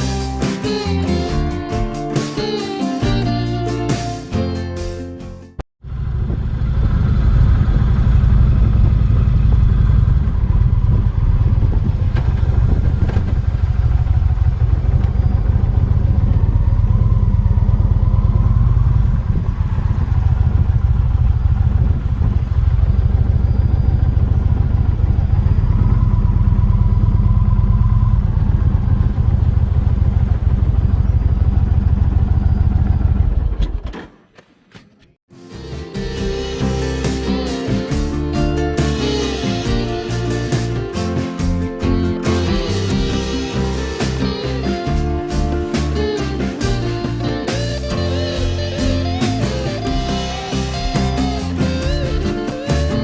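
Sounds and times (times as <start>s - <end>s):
motorcycle engine rumbling: 5.8s - 34.2s, 35.4s - 53.0s.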